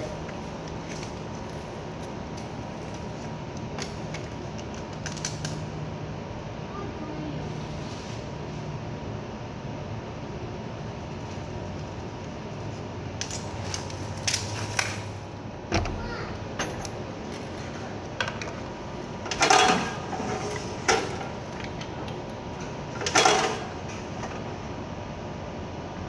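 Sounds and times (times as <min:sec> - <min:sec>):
steady low background hum: 0:00.0 - 0:26.0
workshop knocks and clatters: 0:15.7 - 0:24.6.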